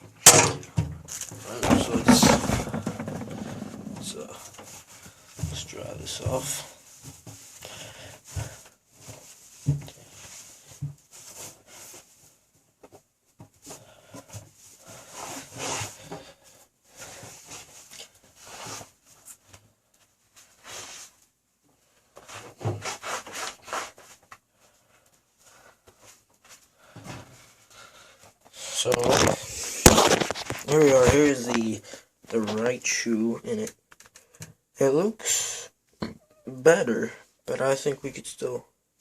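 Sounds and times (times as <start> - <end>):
cloth rubbing a sneaker: 14.8 - 16.1, 16.9 - 19.2, 20.3 - 21.2, 22.1 - 24.2.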